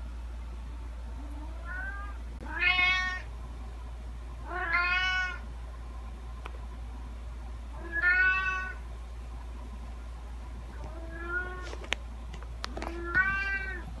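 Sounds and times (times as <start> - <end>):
cat meowing: 1.4 - 3.3, 4.5 - 5.4, 7.8 - 8.8, 10.9 - 11.6, 12.9 - 13.9.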